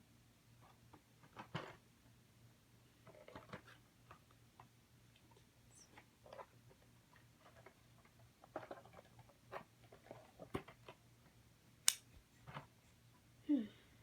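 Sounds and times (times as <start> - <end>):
blister pack clicks and crackles: 11.9 - 12.1.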